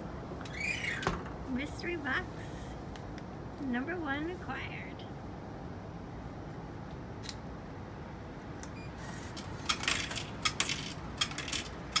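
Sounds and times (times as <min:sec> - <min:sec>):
low background noise: 0:00.0 - 0:12.0
small metal objects clinking: 0:09.6 - 0:12.0.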